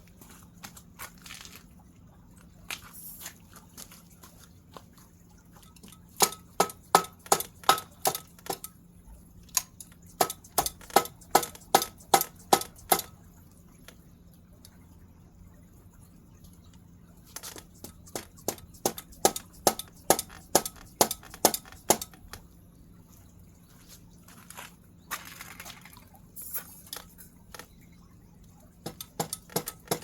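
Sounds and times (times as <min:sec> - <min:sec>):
faint steady hum: 0:00.0 - 0:30.0
sharp ringing metallic taps: 0:05.6 - 0:08.8, 0:28.9 - 0:30.0.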